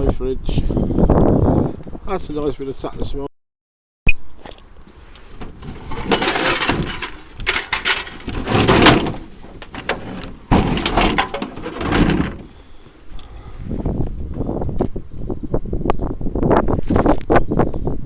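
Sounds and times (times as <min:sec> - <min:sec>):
scrap metal clattering: 0:05.2 - 0:12.7.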